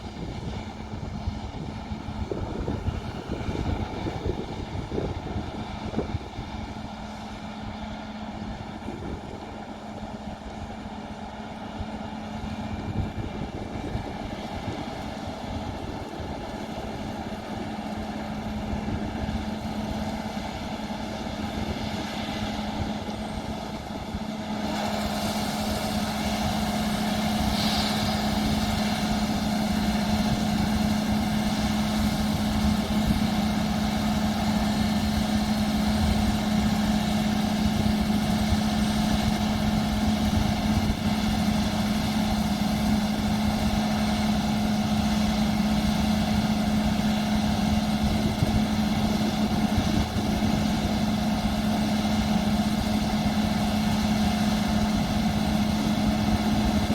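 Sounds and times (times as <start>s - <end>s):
combine harvester engine drone: 0.0s - 56.9s.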